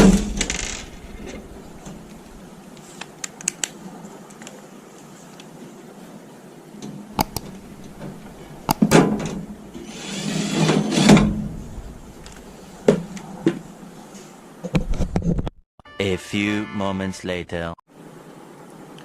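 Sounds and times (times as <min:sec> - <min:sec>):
scraping slide: 0:09.8 - 0:13.5.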